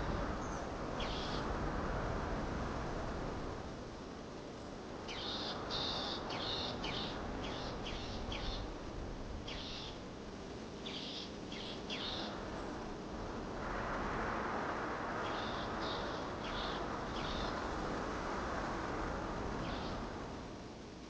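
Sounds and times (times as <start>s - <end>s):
background hiss: 0.0s - 21.0s
bird chirping: 5.1s - 8.6s, 9.5s - 10.0s, 10.8s - 12.3s.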